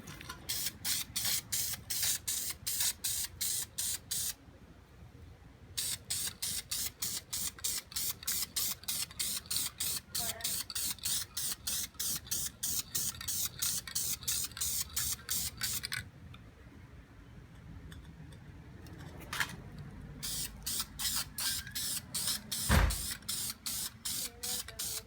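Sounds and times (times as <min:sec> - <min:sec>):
aerosol can spraying in bursts: 0:00.5 - 0:04.4, 0:05.8 - 0:15.9, 0:20.2 - 0:25.0
heavy low thump: 0:22.7 - 0:23.0.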